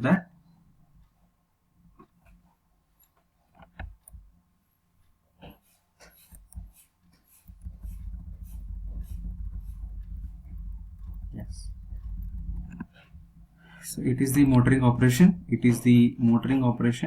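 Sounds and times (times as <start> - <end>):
pen writing: 5.4 - 15.8
steady low rumble: 7.6 - 17.0.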